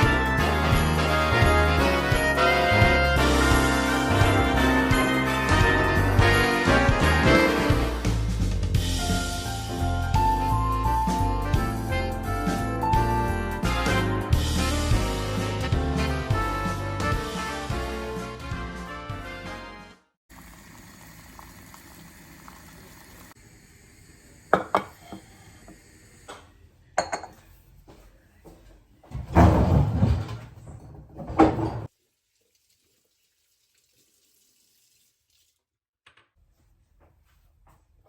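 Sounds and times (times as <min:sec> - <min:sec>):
dishes and cutlery clinking: 0:26.4 - 0:27.6.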